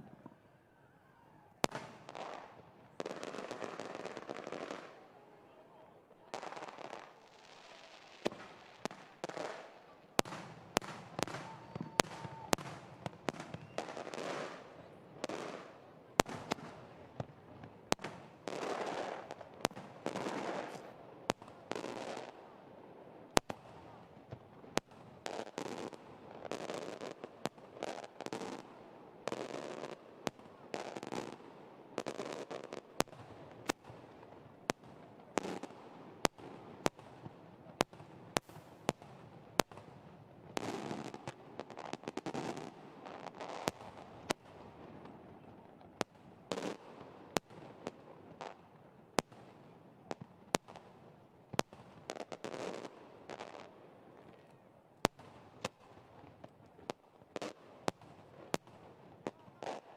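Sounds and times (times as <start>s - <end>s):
fireworks bangs: 1.6s - 5.1s, 6.3s - 22.3s
fireworks crackling: 1.6s - 22.5s, 23.3s - 49.4s, 51.5s - 54.2s, 55.0s - 59.9s.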